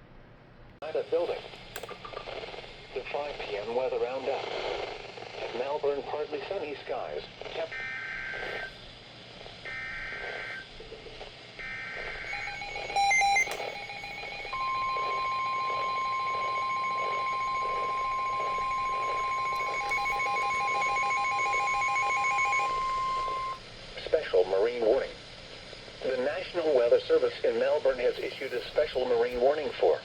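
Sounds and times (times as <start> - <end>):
buzzing data bursts: 11.6 - 23.6
steady warning tone: 11.6 - 23.6
beeping alert tone: 12.3 - 23.6.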